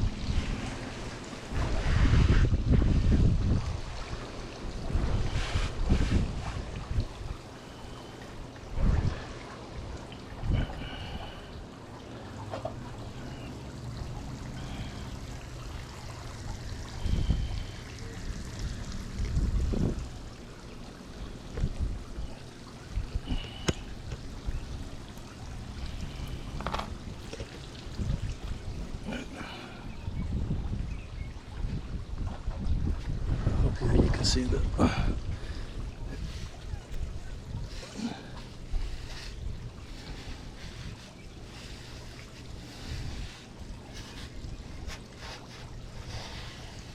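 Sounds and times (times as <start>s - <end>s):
wind on microphone: 0.0s - 7.6s, 8.6s - 11.5s, 15.8s - 46.9s
water trickling: 0.0s - 46.9s
brush scrubbing screen frame: 37.7s - 46.9s.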